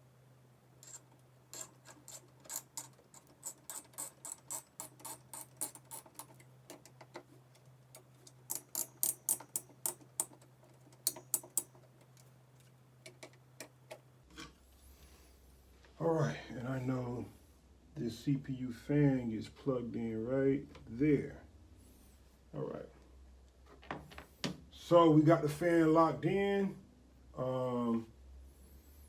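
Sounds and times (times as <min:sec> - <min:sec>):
screwdriver clicking: 0:08.0 - 0:11.8.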